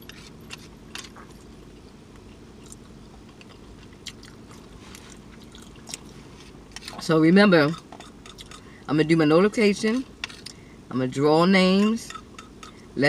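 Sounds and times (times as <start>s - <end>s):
person chewing food: 0.0s - 7.0s, 7.7s - 8.8s
steady low hum: 0.0s - 13.0s.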